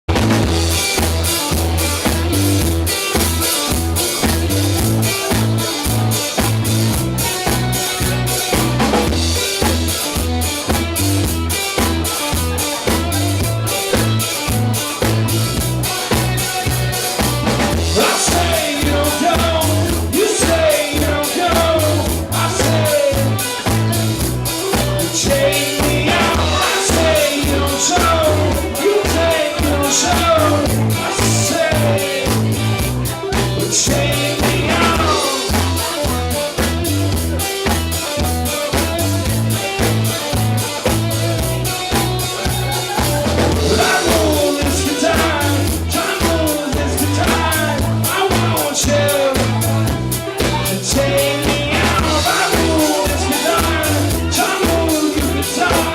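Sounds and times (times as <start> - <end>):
live rock band playing: 0.1 - 55.9
person singing: 17.8 - 36.4, 42.2 - 55.9.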